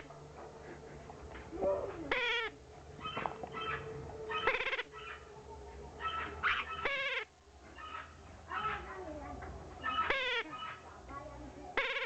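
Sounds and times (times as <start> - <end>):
harsh quavering bird calls: 2.1 - 5.3, 6.0 - 8.9, 9.8 - 10.9, 11.7 - 12.0
soft bird chattering: 9.8 - 11.0, 11.7 - 12.0.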